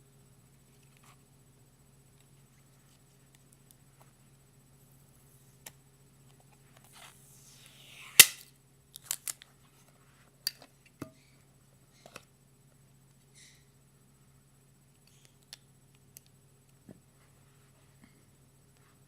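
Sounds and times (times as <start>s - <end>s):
sharp loud snap: 8.1s - 8.5s.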